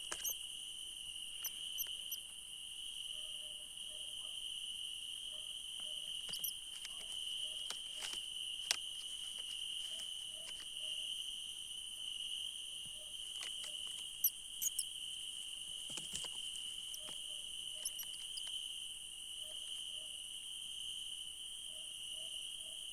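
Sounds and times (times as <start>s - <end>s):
sharp clicks and scratches: 0.0s - 0.4s, 6.2s - 10.8s, 13.3s - 14.8s, 15.8s - 18.6s
crickets chirping: 0.0s - 22.9s.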